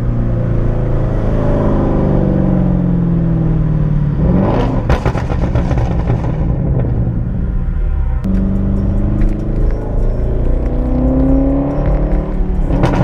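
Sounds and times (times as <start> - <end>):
car exhaust revving: 0.0 - 13.0
exhaust popping crackles: 8.2 - 13.0.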